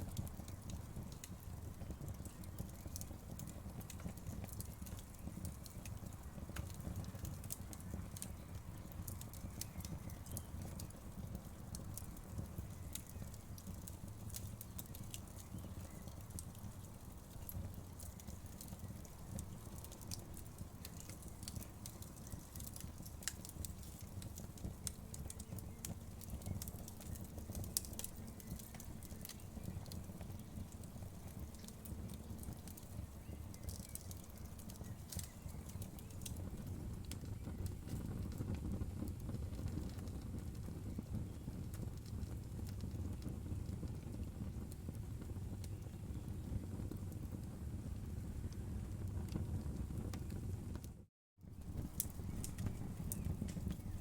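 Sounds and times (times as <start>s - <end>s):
wood fire crackling: 0.0s - 54.0s
sharp pops and clicks: 9.1s - 38.6s, 51.6s - 54.0s.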